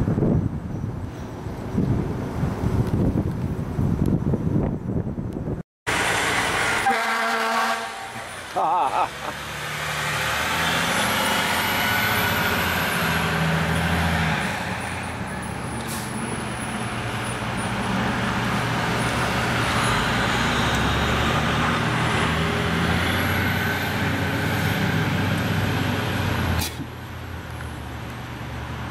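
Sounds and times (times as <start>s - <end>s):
road traffic noise: 0.0s - 28.9s
heavy vehicle engine running: 5.9s - 28.9s.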